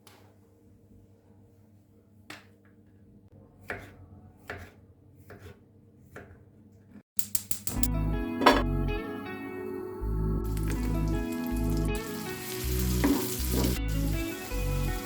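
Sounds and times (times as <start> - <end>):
knife chopping on cutting board: 3.6 - 6.4.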